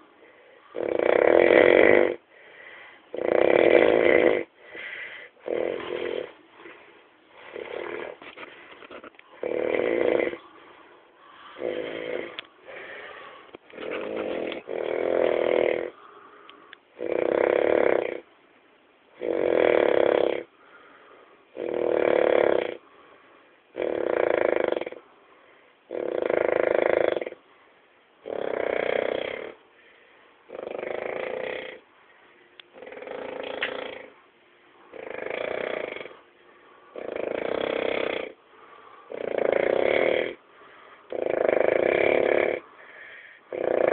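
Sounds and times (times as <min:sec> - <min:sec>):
snoring: 0:00.6 - 0:02.2, 0:03.1 - 0:10.6, 0:11.3 - 0:16.1, 0:17.0 - 0:18.3, 0:19.2 - 0:20.5, 0:21.5 - 0:22.8, 0:23.7 - 0:25.0, 0:25.9 - 0:27.4, 0:28.2 - 0:29.6, 0:30.5 - 0:31.8, 0:32.7 - 0:34.2, 0:34.9 - 0:36.2, 0:36.9 - 0:43.9.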